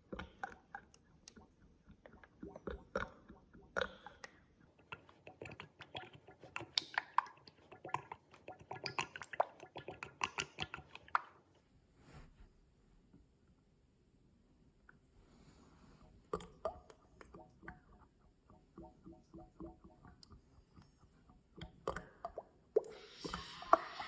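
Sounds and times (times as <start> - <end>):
oil sloshing and squishing: 4.3 - 11.5.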